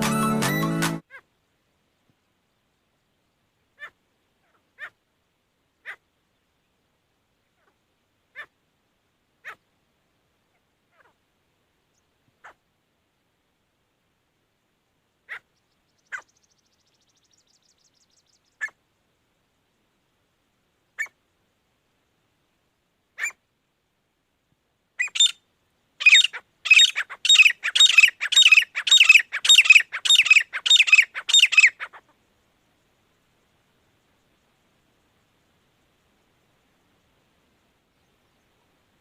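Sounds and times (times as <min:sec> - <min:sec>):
francolin calling: 0:05.8 - 0:06.8, 0:07.4 - 0:08.6, 0:09.4 - 0:09.7, 0:15.2 - 0:18.9, 0:20.9 - 0:21.3, 0:23.1 - 0:23.4, 0:24.9 - 0:32.3.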